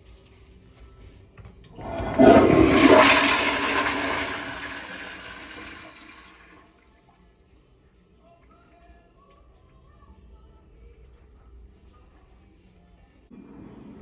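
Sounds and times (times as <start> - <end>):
toilet flushing: 1.7 - 6.7.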